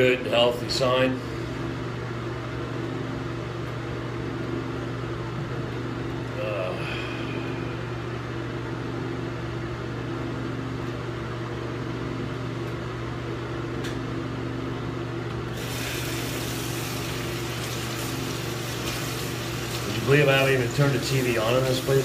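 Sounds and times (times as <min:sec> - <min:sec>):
low mechanical hum: 0:00.0 - 0:22.0
hiss: 0:15.6 - 0:22.0.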